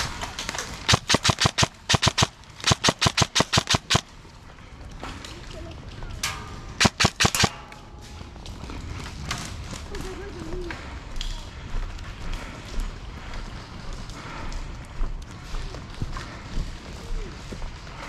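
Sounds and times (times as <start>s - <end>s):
airsoft gun firing: 0.7s - 4.0s, 6.2s - 8.2s.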